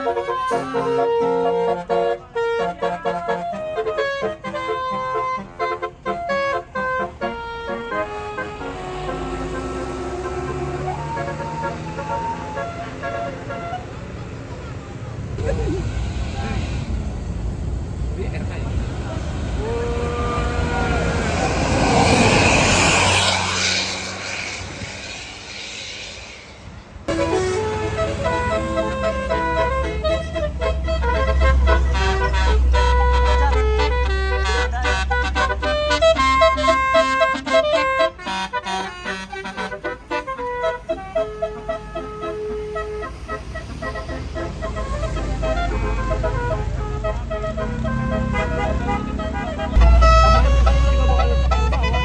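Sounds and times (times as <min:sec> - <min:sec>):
musical bus horn melody: 0:00.0 - 0:15.5, 0:19.0 - 0:25.2, 0:27.1 - 0:52.0
low engine hum: 0:04.5 - 0:38.6, 0:39.6 - 0:52.0.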